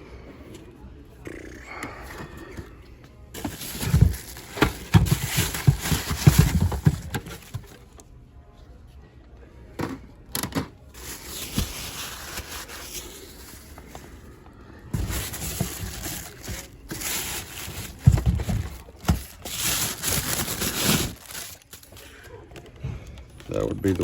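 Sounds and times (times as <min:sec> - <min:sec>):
cardboard rustling and scraping: 0:03.4 - 0:07.8, 0:11.0 - 0:14.3, 0:14.9 - 0:22.0.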